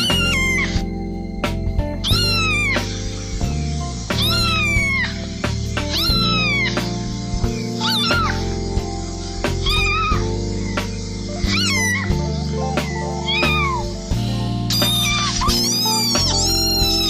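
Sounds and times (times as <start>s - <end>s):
cat meowing: 0.0s - 0.8s, 2.0s - 3.0s, 4.1s - 7.0s, 7.8s - 8.6s, 9.6s - 10.4s, 11.4s - 12.3s, 13.2s - 14.0s, 14.7s - 17.0s
background music: 0.0s - 17.0s.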